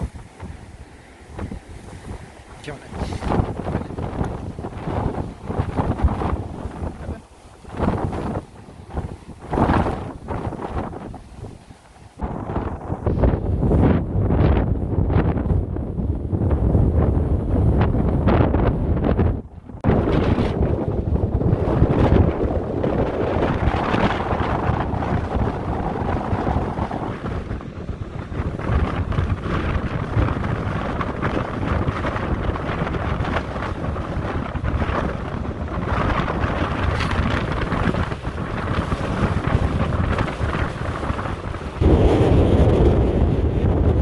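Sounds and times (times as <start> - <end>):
wind buffeting microphone: 0.0 - 44.0.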